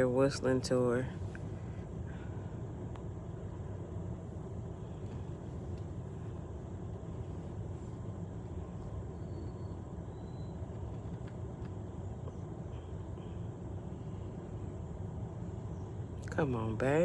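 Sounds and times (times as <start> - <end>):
low outdoor rumble: 0.0 - 17.0
faint bird chirps: 9.1 - 10.6.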